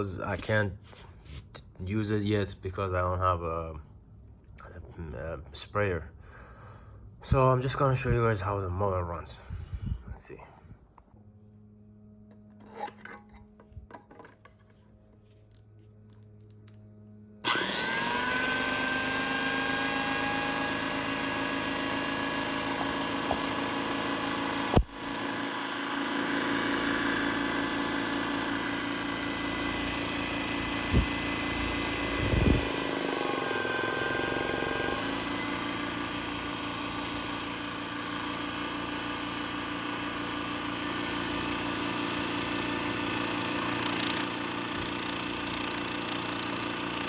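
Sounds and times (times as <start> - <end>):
air compressor running loudly: 17.4 - 47.0.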